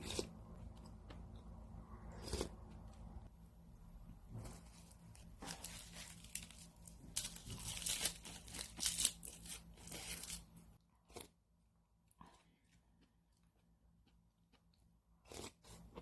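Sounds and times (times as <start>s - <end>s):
packaging crinkling and tearing: 5.4s - 10.5s.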